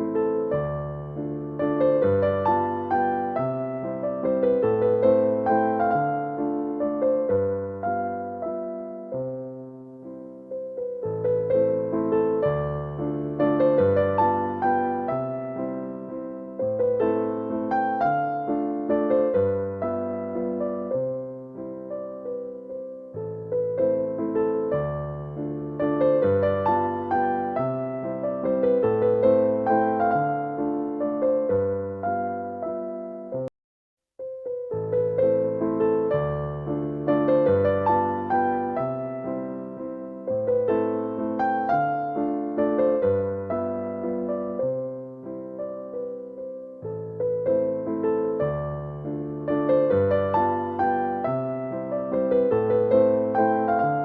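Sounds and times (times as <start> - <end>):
slow piano melody: 0.0 - 33.5, 34.2 - 54.0.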